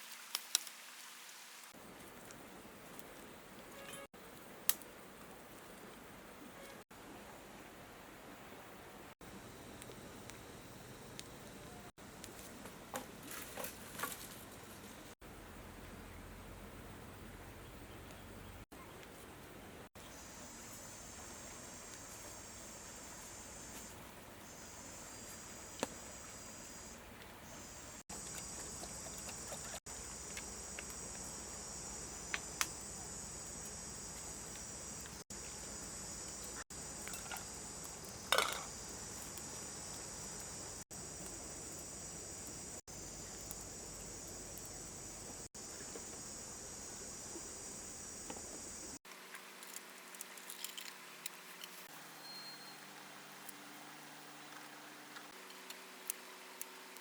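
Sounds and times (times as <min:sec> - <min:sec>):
insects chirring: 0:20.0 - 0:49.0.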